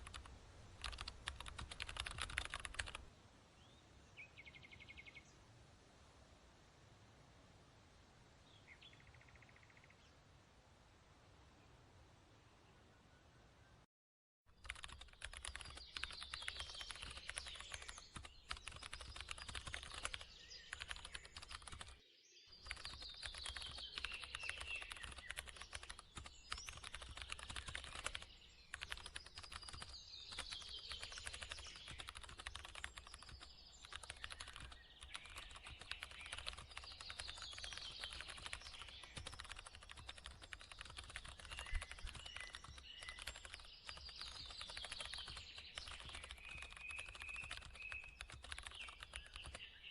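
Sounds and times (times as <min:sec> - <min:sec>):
computer keyboard typing: 0:00.0 - 0:03.0, 0:14.5 - 0:22.0, 0:22.6 - 0:49.6
falling series of chirps: 0:14.6 - 0:49.8.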